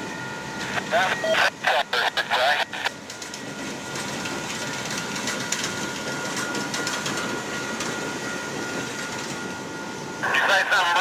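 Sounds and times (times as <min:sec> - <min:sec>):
freight train rumbling on rails: 0:00.0 - 0:11.0
rattling clicks of train wheels: 0:02.9 - 0:10.0.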